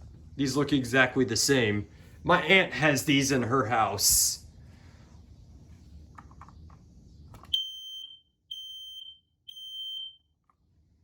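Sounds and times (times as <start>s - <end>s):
smoke alarm click: 7.5s - 10.2s
high-pitched smoke alarm beeps: 7.5s - 10.3s.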